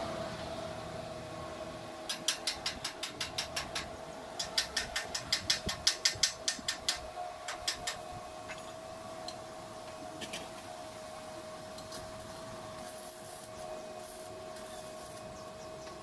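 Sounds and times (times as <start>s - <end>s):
steady hum: 0.0s - 16.0s
hammer tapping on steel: 2.1s - 8.0s.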